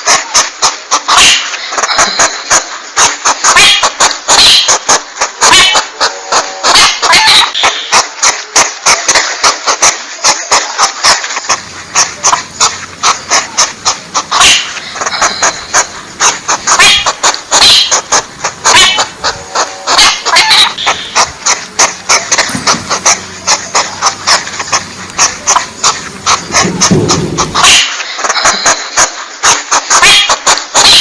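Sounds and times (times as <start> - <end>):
porcupine high cries: 12.0 - 27.8
porcupine clicking: 20.2 - 27.7.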